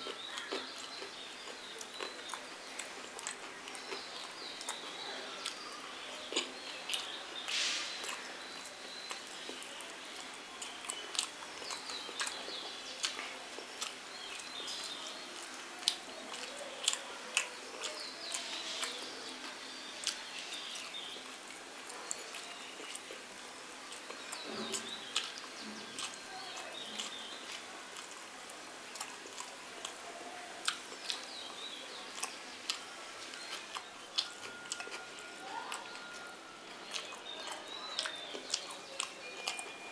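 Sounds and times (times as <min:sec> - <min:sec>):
person chewing food: 0:00.0 - 0:39.8.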